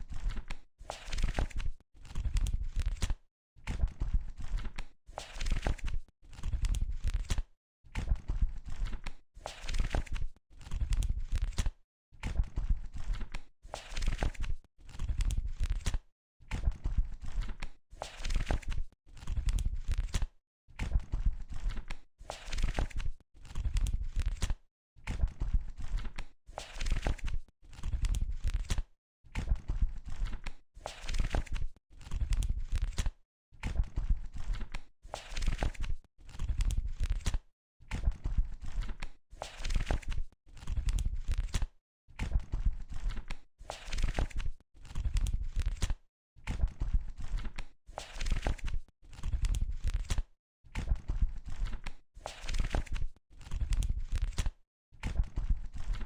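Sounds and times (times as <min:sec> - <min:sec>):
book pages rustling: 0:00.2 - 0:03.1, 0:09.5 - 0:11.7, 0:13.8 - 0:15.0, 0:22.4 - 0:24.5, 0:25.9 - 0:27.9, 0:30.2 - 0:32.2, 0:34.4 - 0:37.4, 0:38.7 - 0:41.6, 0:42.9 - 0:45.9, 0:47.2 - 0:50.2, 0:51.5 - 0:54.5.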